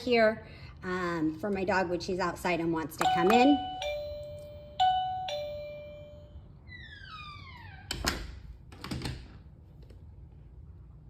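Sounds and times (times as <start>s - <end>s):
doorbell chiming: 3.0s - 6.6s.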